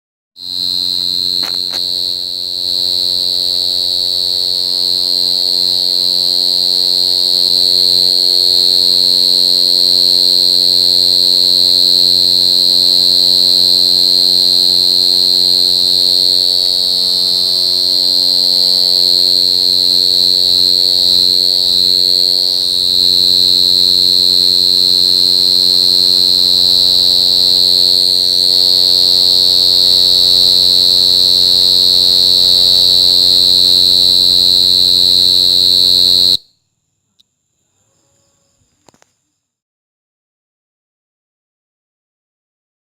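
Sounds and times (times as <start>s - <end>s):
steady low hum: 0.4s - 8.8s, 11.4s - 36.4s
crickets chirping: 0.4s - 39.6s.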